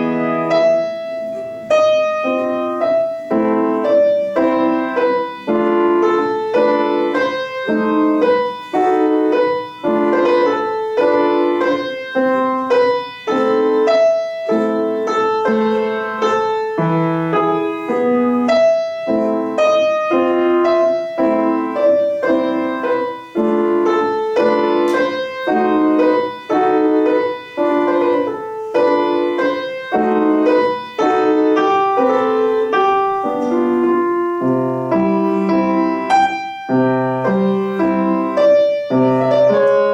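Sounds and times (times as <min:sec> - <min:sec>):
solo piano classical piece: 0:00.0 - 0:39.9.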